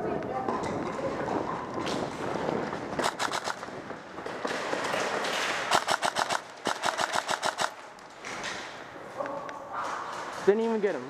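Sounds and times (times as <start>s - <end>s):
airsoft gun full-auto bursts: 3.0s - 3.7s, 5.7s - 7.8s.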